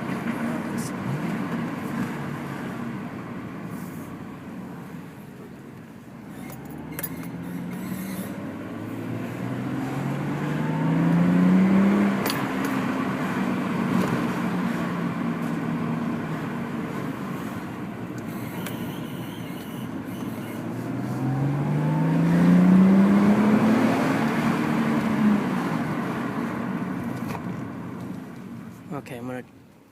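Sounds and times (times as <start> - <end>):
road noise inside car: 0.0 - 29.9
car engine accelerating: 6.1 - 28.9.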